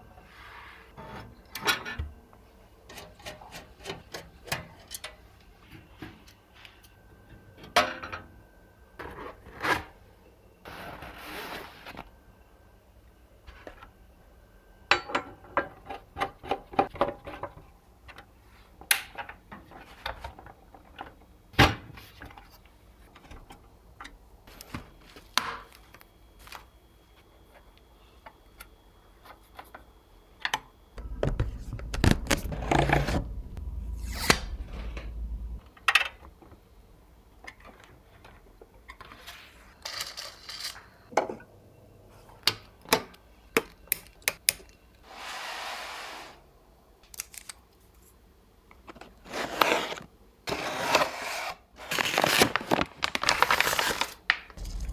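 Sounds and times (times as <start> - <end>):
clicks and knocks of plastic and metal: 31.0 - 35.6, 54.6 - 54.9
low rumble: 31.0 - 35.6, 54.6 - 54.9.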